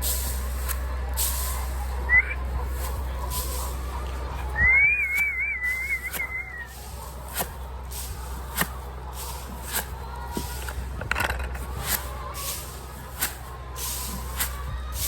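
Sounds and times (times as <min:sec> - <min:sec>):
person whistling high note: 0:02.1 - 0:02.4, 0:04.6 - 0:06.7.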